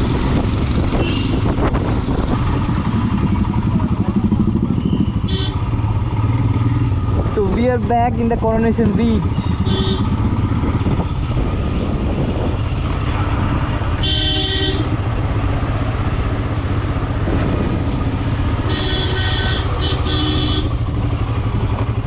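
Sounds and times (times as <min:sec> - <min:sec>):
wind rush: 0:00.0 - 0:03.8, 0:10.2 - 0:13.9, 0:14.8 - 0:18.6
motorcycle engine running: 0:00.0 - 0:22.0
vehicle horn honking: 0:01.0 - 0:01.4, 0:04.8 - 0:05.6, 0:09.4 - 0:10.2, 0:14.0 - 0:15.0, 0:18.6 - 0:20.8.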